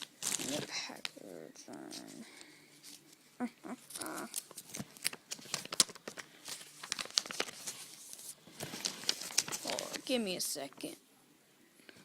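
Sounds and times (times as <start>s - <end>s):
plastic wrapper crinkling: 0.0s - 1.2s, 3.8s - 10.2s.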